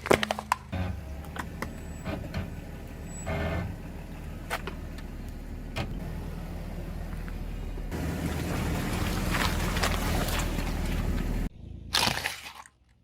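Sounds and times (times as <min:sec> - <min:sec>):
sharp cracks under tyres: 0:00.0 - 0:01.8, 0:04.4 - 0:05.4, 0:11.9 - 0:13.0
car engine running: 0:00.6 - 0:12.0.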